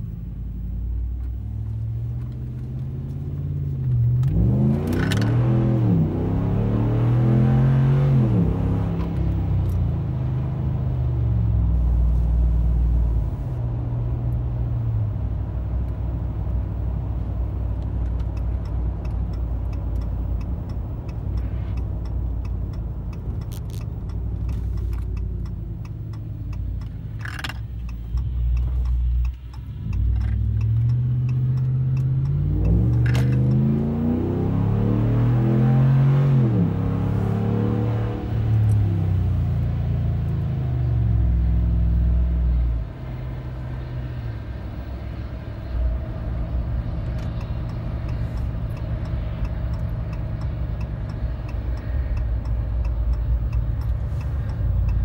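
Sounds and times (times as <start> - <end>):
tyre and road noise: 0.0 - 55.0
truck engine exhaust: 4.3 - 55.0
sharp clicks: 18.0 - 33.6, 46.7 - 55.0.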